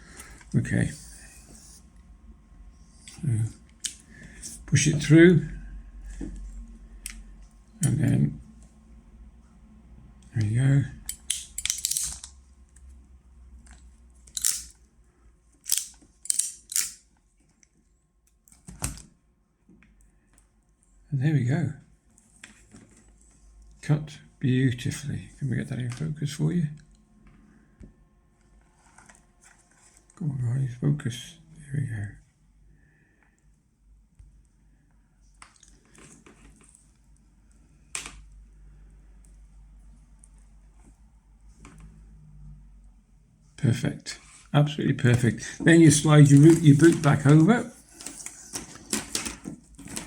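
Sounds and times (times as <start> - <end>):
crimping tool clicking: 14.4 - 14.8, 15.7 - 17.0.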